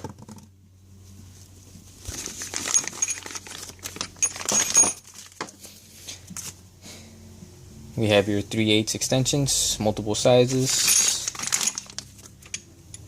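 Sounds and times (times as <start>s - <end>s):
rustling: 0.9s - 6.6s, 10.4s - 12.6s
metal tools clinking: 2.6s - 5.4s, 10.5s - 12.7s.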